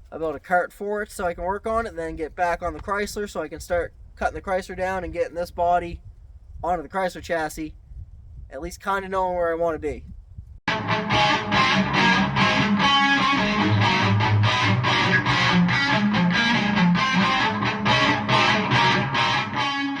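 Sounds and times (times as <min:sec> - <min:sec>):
rock music with distorted guitar: 0:10.7 - 0:20.0.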